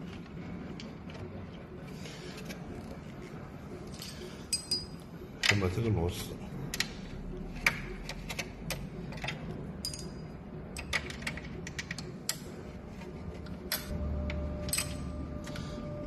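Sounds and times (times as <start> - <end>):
tools and metal parts knocking: 3.8 - 6.0, 6.7 - 15.6.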